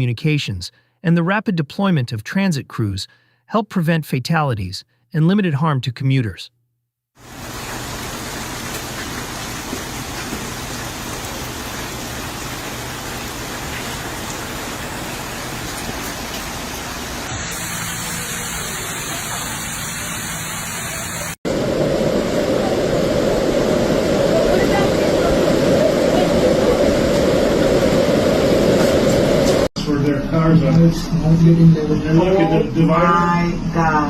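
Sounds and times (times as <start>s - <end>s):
floodwater flowing: 7.2s - 29.7s
heavy rain: 7.2s - 29.7s.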